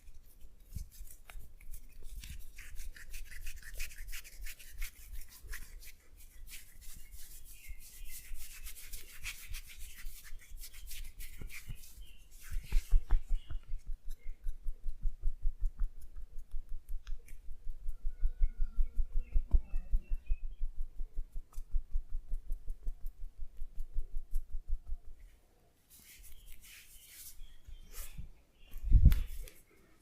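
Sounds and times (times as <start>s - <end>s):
rapid tapping massage thumps: 12.5s - 25.2s.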